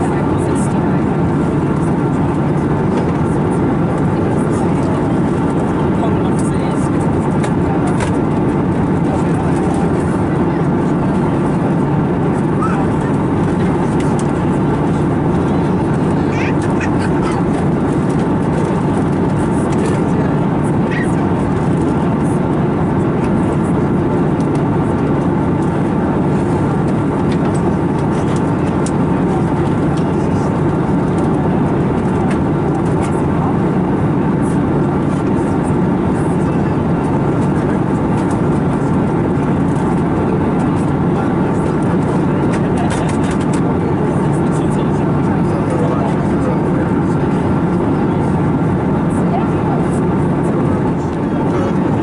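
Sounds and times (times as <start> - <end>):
airplane cabin airflow and engine drone: 0.0 - 52.0.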